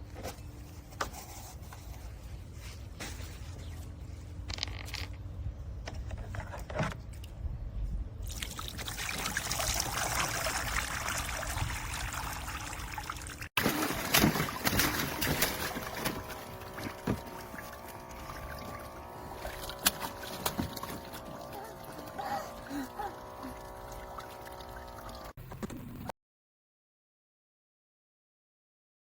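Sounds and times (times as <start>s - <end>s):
water trickling and splashing: 8.2s - 25.4s.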